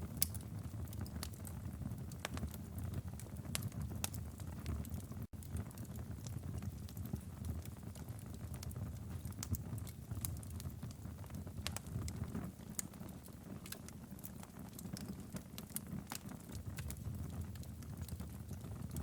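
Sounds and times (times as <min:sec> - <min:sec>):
fire pops and snaps: 0:00.0 - 0:19.0
wood fire crackling: 0:00.0 - 0:19.0.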